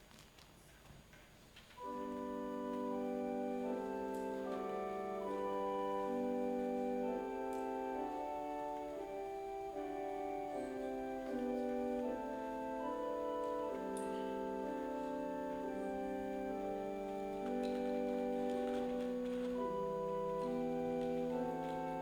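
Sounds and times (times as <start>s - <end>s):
organ playing sustained chords: 1.7s - 22.0s.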